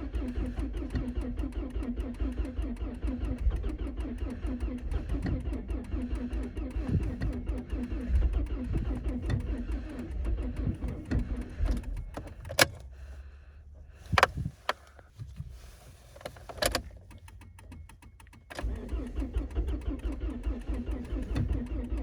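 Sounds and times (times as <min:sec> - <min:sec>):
sharp clicks: 0:00.0 - 0:13.0, 0:16.2 - 0:22.0
car engine running unevenly: 0:00.0 - 0:22.0.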